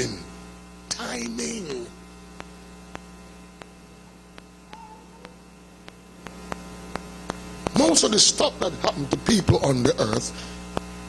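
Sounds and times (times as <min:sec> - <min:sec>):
electrical mains hum: 0:00.0 - 0:11.0
faint sharp clicks: 0:02.4 - 0:03.7, 0:04.3 - 0:07.8.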